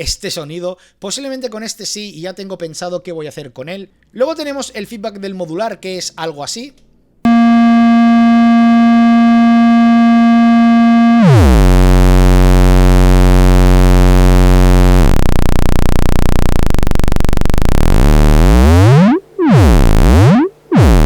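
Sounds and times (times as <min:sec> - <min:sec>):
synthesizer feedback buzzing: 0:07.3 - 0:21.0.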